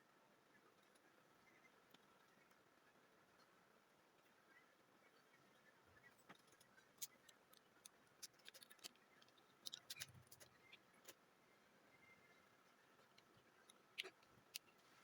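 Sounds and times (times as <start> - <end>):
small tools clicking: 6.4 - 10.5.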